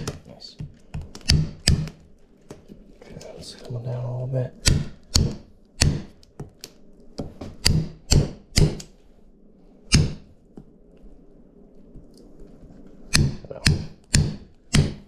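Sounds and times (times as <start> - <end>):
tool whacking a carcass: 1.1 - 2.0, 4.6 - 6.2, 7.6 - 8.9, 9.9 - 10.3, 13.1 - 15.0.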